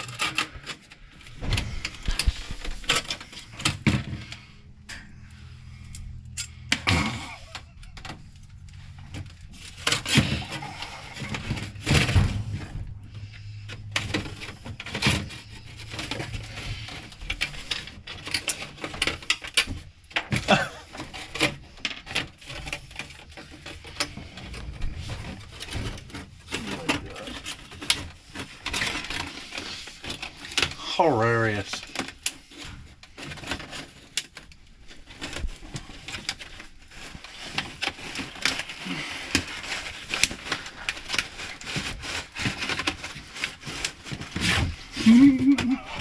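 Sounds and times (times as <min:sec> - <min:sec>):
foil duct crinkling: 0:00.0 - 0:46.0.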